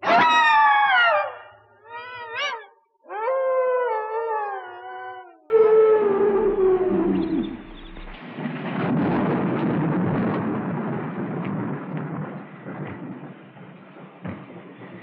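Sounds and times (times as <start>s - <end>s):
howl-like cry sliding down: 0.0s - 8.2s
low rumble: 6.2s - 8.2s.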